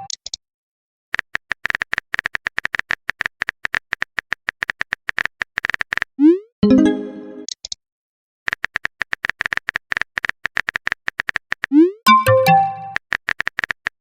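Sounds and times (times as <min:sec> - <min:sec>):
notification chime: 0:06.6 - 0:07.5, 0:12.1 - 0:13.0.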